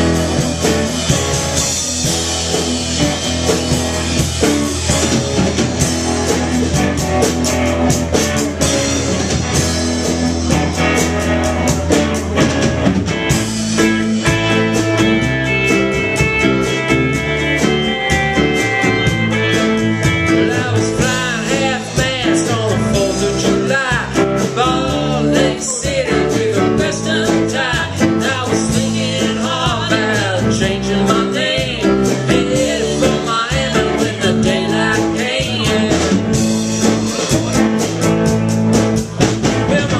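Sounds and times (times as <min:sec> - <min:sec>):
drum kit: 0:00.0 - 0:39.9
guitar: 0:00.0 - 0:39.9.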